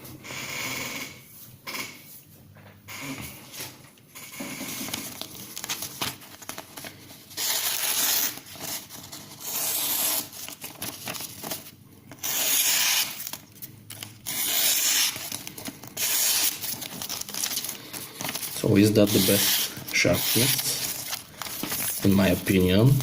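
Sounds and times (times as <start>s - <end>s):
knife slicing paper: 7.3s - 11.6s, 12.2s - 22.6s.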